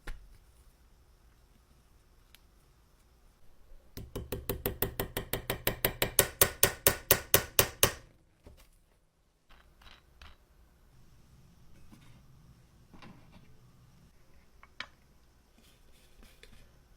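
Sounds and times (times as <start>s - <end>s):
sharp metallic taps: 4.0s - 8.0s.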